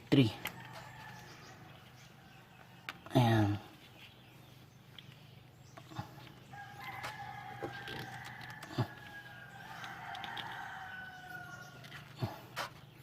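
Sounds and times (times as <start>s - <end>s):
roosters crowing: 0.4s - 2.8s, 6.0s - 13.0s.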